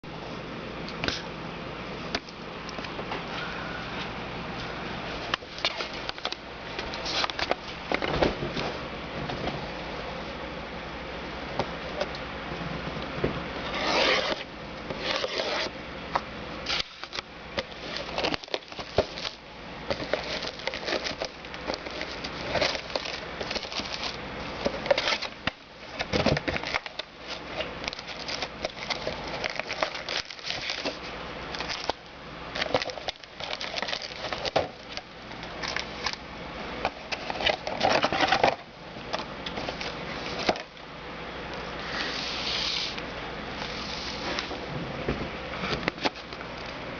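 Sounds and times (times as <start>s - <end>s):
packaging crinkling and tearing: 16.7s - 36.2s.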